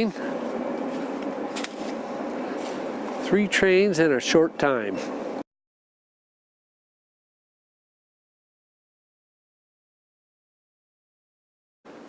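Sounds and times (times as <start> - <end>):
outdoor background noise: 0.0 - 5.4.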